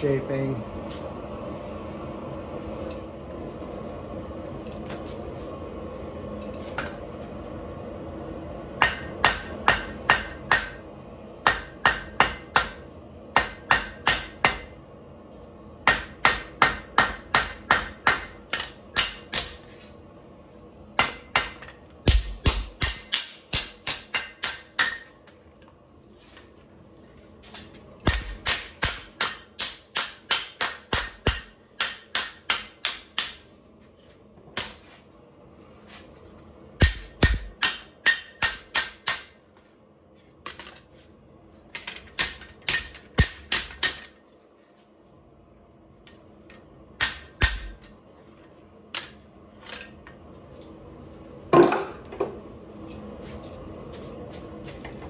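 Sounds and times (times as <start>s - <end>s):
steady background noise: 0.0s - 55.0s
hammer striking steel on anvil: 8.8s - 14.9s, 15.8s - 19.8s, 21.0s - 25.4s, 28.0s - 33.5s, 34.5s - 34.9s, 36.8s - 39.6s, 41.8s - 44.2s, 47.0s - 47.9s.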